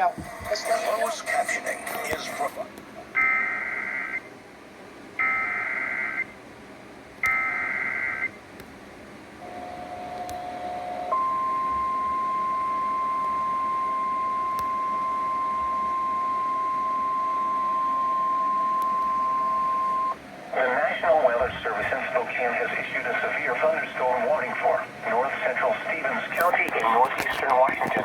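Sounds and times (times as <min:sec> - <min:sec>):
steady warning alarm tone: 0:03.2 - 0:04.3, 0:05.2 - 0:06.4, 0:07.2 - 0:08.4, 0:09.4 - 0:20.3.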